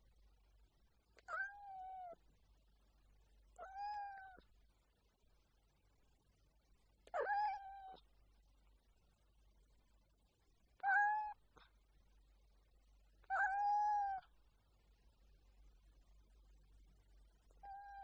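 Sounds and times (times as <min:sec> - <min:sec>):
cat meowing: 0:01.2 - 0:02.2, 0:03.6 - 0:04.4, 0:07.1 - 0:08.0, 0:10.8 - 0:11.4, 0:13.2 - 0:14.3, 0:17.6 - 0:18.0.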